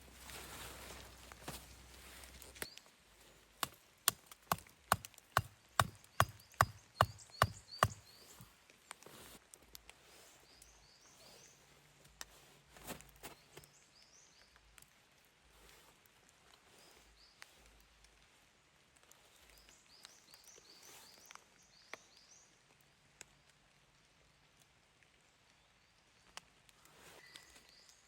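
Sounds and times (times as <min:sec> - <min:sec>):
axe chopping wood: 0:03.6 - 0:08.4.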